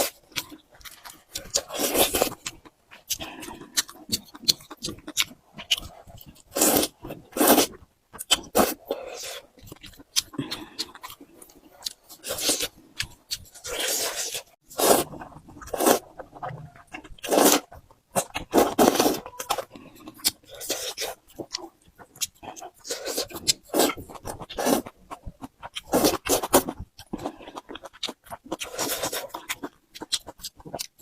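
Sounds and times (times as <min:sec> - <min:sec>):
chewing with wet mouth clicks: 0:00.2 - 0:06.5, 0:09.5 - 0:13.6, 0:19.4 - 0:31.0
noodle slurps: 0:13.6 - 0:16.5, 0:17.2 - 0:17.7.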